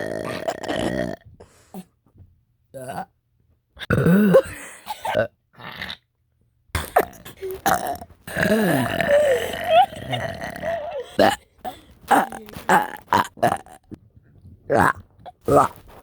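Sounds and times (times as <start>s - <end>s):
person burping: 0.0s - 1.3s, 2.8s - 3.1s, 3.8s - 6.0s, 6.8s - 14.0s, 14.7s - 16.0s.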